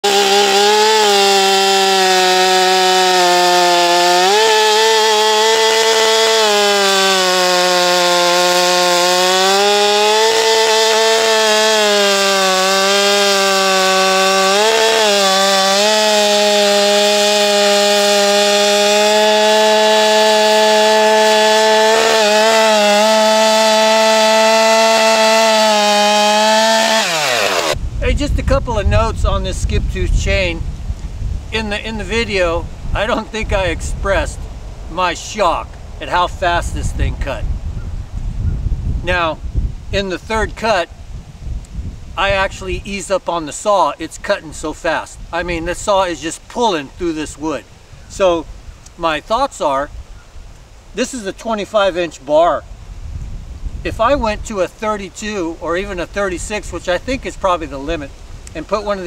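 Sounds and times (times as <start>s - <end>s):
chainsaw cutting wood: 0.0s - 27.8s, 33.0s - 33.9s.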